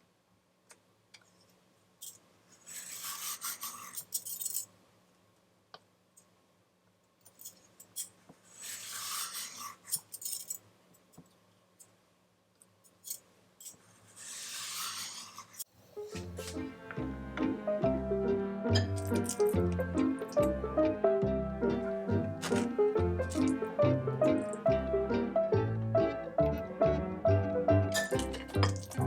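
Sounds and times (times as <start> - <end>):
utensil scraping food: 2.6 - 4.1, 8.5 - 9.9, 14.0 - 16.7.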